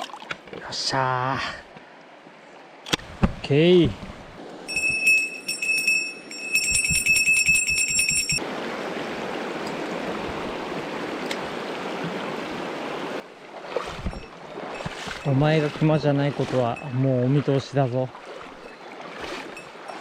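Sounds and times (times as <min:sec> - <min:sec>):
stream water rushing: 0:00.0 - 0:20.0
small metal bell jingling: 0:04.7 - 0:08.4.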